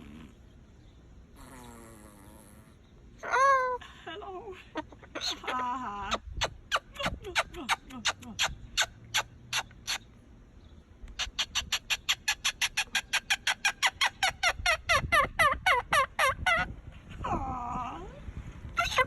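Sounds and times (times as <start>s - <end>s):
parrot calling: 5.2s - 10.1s, 11.2s - 16.7s, 18.8s - 19.0s.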